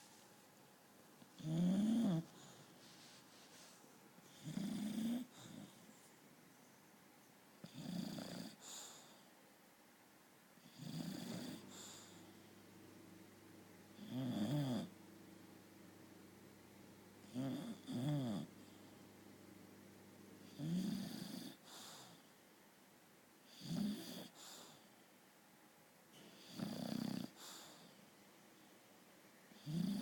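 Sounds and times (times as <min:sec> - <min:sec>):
dog snoring: 0:01.3 - 0:02.7, 0:03.6 - 0:05.8, 0:07.6 - 0:09.2, 0:10.6 - 0:12.4, 0:14.0 - 0:15.0, 0:17.2 - 0:19.0, 0:20.4 - 0:22.2, 0:23.4 - 0:24.8, 0:26.3 - 0:27.9, 0:29.5 - 0:30.0.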